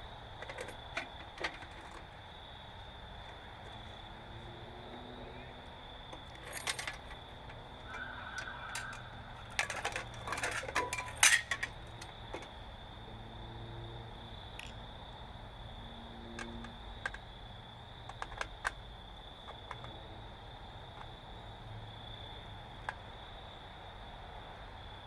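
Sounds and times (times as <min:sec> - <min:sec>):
metal light fixture parts clattering: 0:00.4 - 0:02.0, 0:06.2 - 0:12.5.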